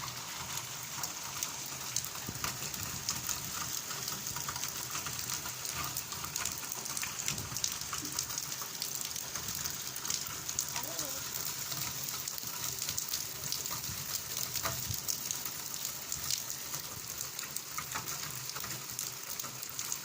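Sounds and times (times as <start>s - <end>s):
rain falling steadily: 0.0s - 20.0s.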